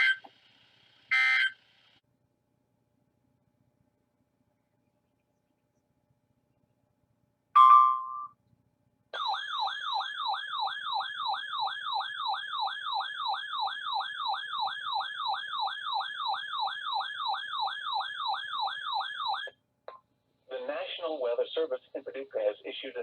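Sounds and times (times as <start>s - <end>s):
loud beep: 7.6s - 8.3s.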